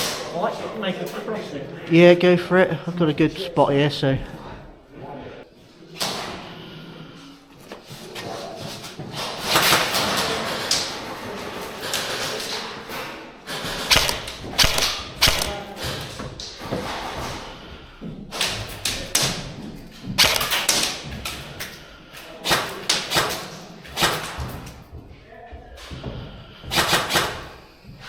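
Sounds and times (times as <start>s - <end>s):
airsoft guns firing: 13.8s - 16.0s, 20.2s - 21.1s.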